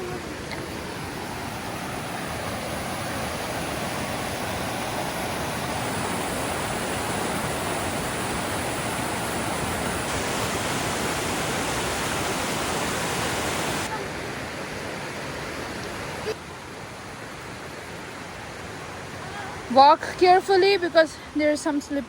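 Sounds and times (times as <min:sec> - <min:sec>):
creek water rushing: 0:00.0 - 0:22.0.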